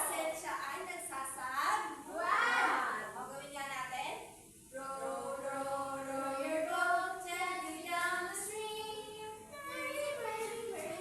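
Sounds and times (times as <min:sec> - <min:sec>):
woman and children singing: 0:04.7 - 0:11.0.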